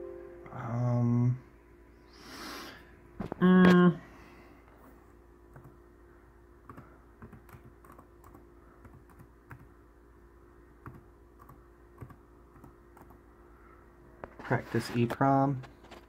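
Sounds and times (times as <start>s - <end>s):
typing on computer keyboard: 6.6s - 9.7s, 10.8s - 13.2s.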